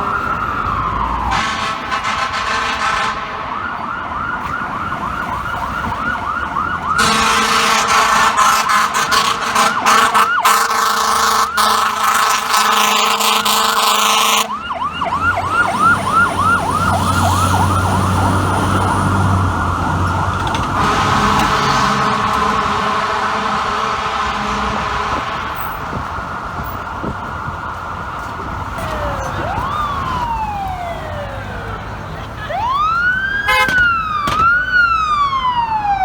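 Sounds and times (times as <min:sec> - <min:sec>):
fire truck siren yelping: 0:00.0 - 0:36.0
air horn blast: 0:01.3 - 0:03.5, 0:07.0 - 0:14.6, 0:20.6 - 0:26.6, 0:33.5 - 0:33.8.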